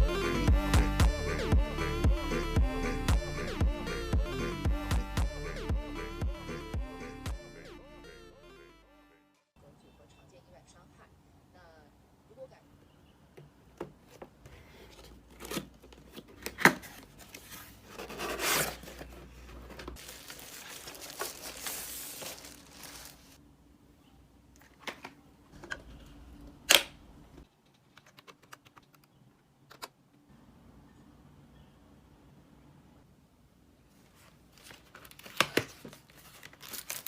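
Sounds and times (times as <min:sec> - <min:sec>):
packaging tearing and crinkling: 0:20.0 - 0:23.4, 0:34.6 - 0:37.0.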